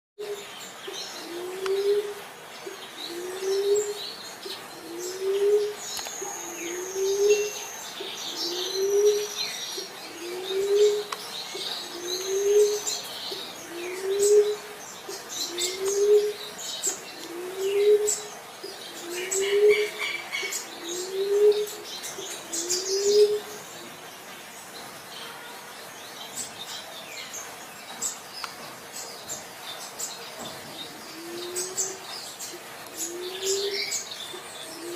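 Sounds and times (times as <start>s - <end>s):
small birds chirping: 0.2s - 34.9s
dove cooing: 3.0s - 7.6s, 8.4s - 14.8s, 15.5s - 16.5s, 17.2s - 21.8s, 31.1s - 32.1s, 32.9s - 34.9s.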